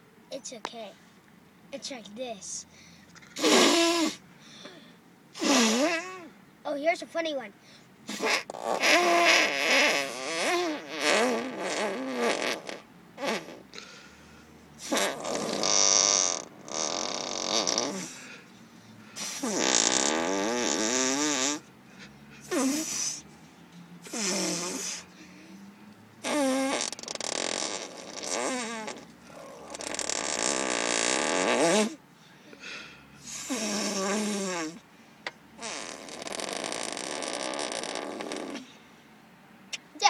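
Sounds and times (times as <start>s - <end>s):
child making arm farts: 3.2s - 4.2s, 5.4s - 6.3s, 8.1s - 13.8s, 14.8s - 18.2s, 19.2s - 21.6s, 22.5s - 23.2s, 24.0s - 25.0s, 26.2s - 32.0s, 33.3s - 34.8s, 35.6s - 38.7s.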